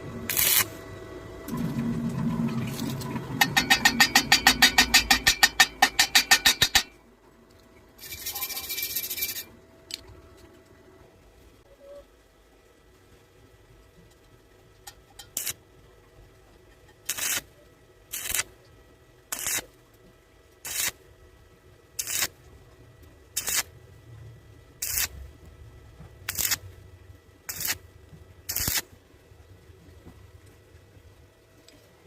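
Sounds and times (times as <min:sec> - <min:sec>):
welding arc sizzles: 0:00.0 - 0:01.6, 0:08.0 - 0:09.6, 0:15.1 - 0:15.6, 0:17.0 - 0:18.6, 0:19.3 - 0:19.8, 0:20.6 - 0:21.0, 0:21.9 - 0:22.6, 0:23.3 - 0:23.8, 0:24.8 - 0:25.4, 0:26.2 - 0:26.8, 0:27.4 - 0:29.0.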